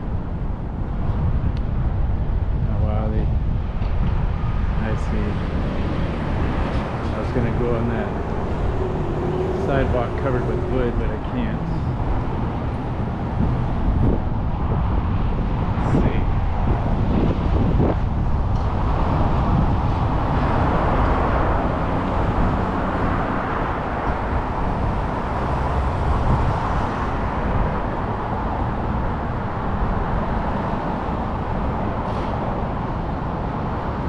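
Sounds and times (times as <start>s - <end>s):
city traffic rumble: 0.0s - 34.0s.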